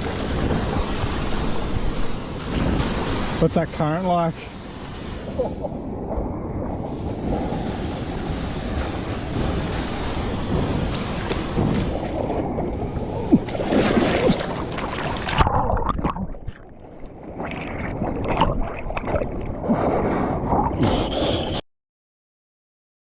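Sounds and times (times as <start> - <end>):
creek water rushing: 0.0 - 5.5
wind buffeting microphone: 4.6 - 16.5.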